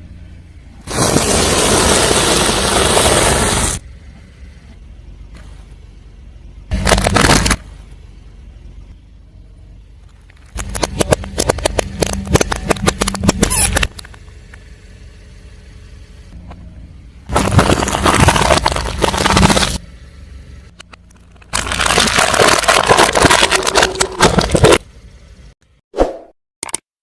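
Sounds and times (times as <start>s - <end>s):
car engine running low: 0.0s - 25.6s
tyre crushing crunchy objects: 0.9s - 3.8s, 6.7s - 8.0s, 17.3s - 19.8s, 21.2s - 24.8s.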